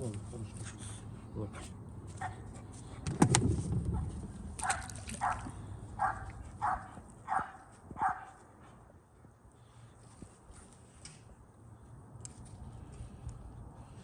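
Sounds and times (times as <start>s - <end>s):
dog barking: 4.6s - 8.4s.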